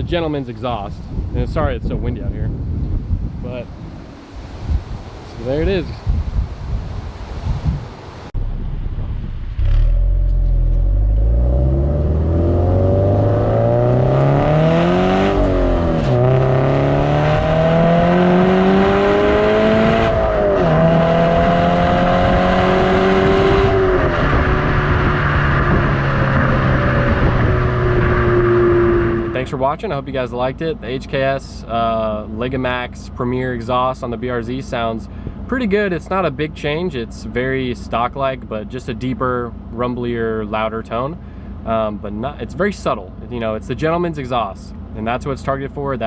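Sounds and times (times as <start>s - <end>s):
car engine accelerating hard: 8.4s - 29.6s.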